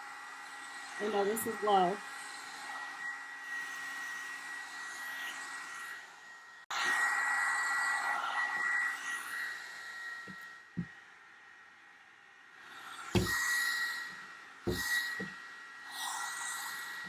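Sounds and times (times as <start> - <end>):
hair dryer blowing with whine: 0.0 - 11.1, 12.7 - 17.0
soft knocks: 13.2 - 13.4, 14.7 - 15.3.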